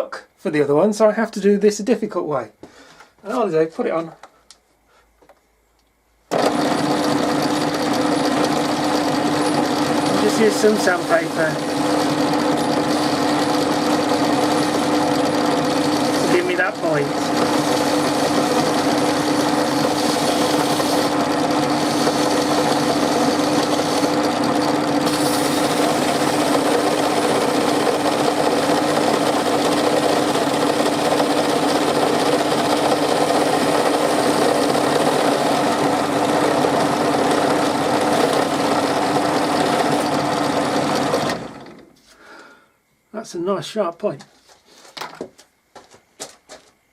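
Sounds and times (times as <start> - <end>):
pillar drill motor humming: 6.3 - 41.9
sandpaper hissing on wood: 17.4 - 24.2, 25.0 - 27.4.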